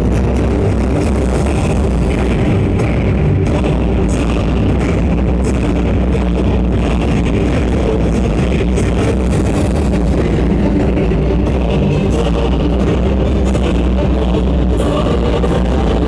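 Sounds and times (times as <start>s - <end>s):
rock music with guitar: 0.0s - 16.0s.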